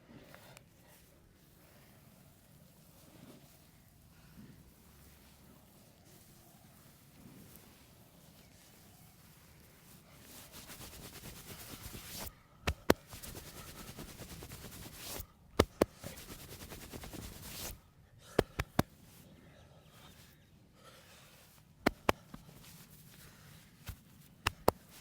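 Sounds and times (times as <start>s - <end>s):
hands tapping on body: 10.6s - 17.8s, 18.4s - 18.9s, 21.8s - 22.8s, 23.8s - 25.0s
sharp loud slaps: 18.4s - 18.9s, 21.8s - 22.4s.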